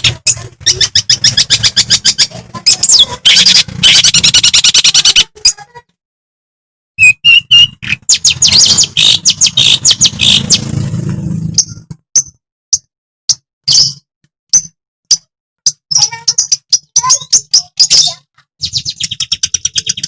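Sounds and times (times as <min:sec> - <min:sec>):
shrike singing harsh chattering notes: 0:00.1 - 0:05.3, 0:07.0 - 0:10.8.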